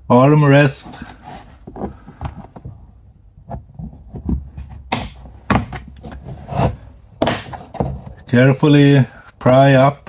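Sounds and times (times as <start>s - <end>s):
soft handling thumps: 0.8s - 8.5s.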